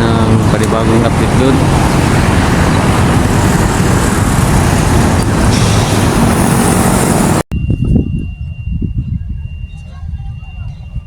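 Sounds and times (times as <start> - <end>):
vehicle road and engine noise: 0.0 - 8.0.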